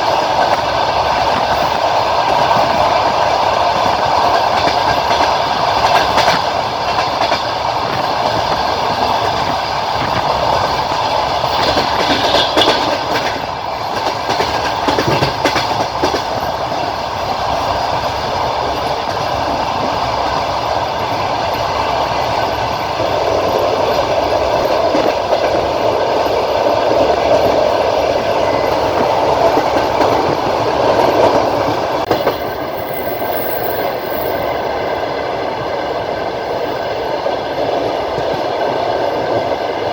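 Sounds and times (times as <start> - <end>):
train wheels rumbling on rails: 0.0 - 39.9
wheel clacks over rail joints: 3.8 - 16.8.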